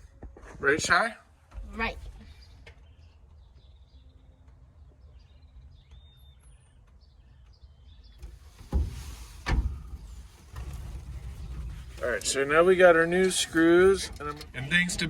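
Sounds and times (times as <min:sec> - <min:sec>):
bird chirps: 0:02.4 - 0:08.3
heavy thump: 0:08.6 - 0:12.0.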